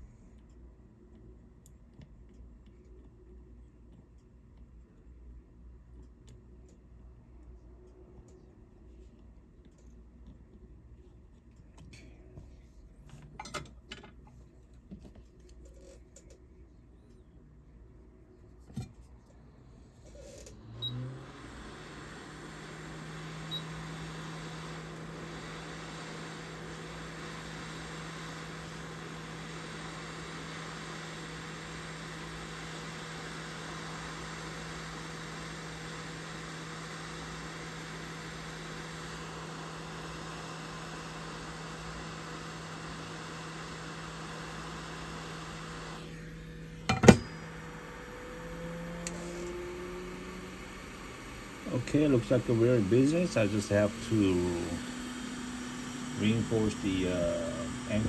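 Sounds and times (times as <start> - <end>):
electric blower motor hum: 20.5 - 58.0.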